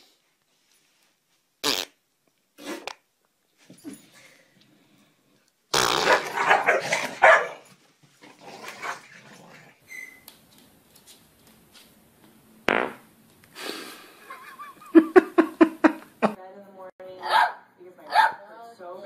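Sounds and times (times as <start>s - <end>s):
dog growling: 6.1s - 7.2s, 8.2s - 9.8s
dog barking: 6.1s - 7.7s, 17.2s - 18.4s.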